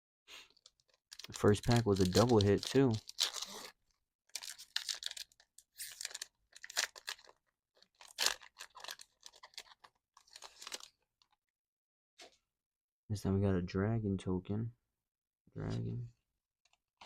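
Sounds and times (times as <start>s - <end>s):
foil wrapper crinkling: 0.5s - 11.4s.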